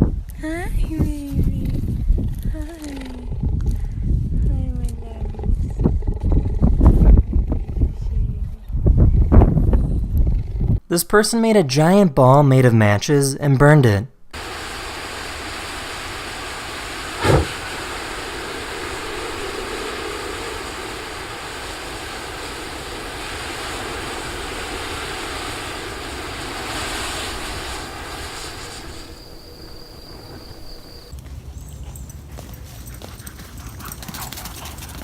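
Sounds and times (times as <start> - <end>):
hissing flame: 14.3 - 31.1
sharp crack of burning: 14.3 - 31.1.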